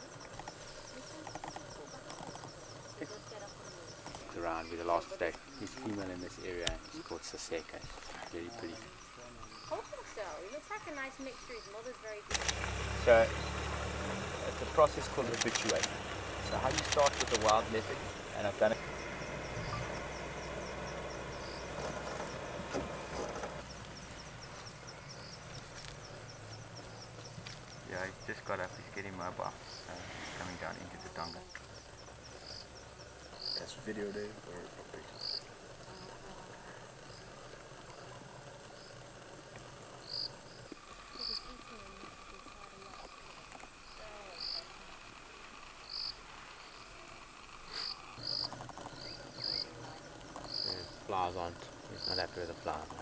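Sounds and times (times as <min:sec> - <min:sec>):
crickets chirping: 0:00.0 - 0:53.0
faint insect hiss: 0:00.0 - 0:53.0
low pulsing insect call: 0:00.0 - 0:53.0
high chirping: 0:11.4 - 0:22.5
vehicle engine idling: 0:12.3 - 0:53.0.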